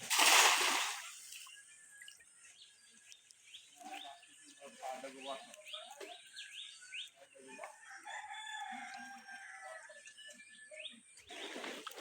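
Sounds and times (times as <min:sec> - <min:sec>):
small birds chirping: 0:00.7 - 0:07.7
rooster crowing: 0:07.9 - 0:09.8.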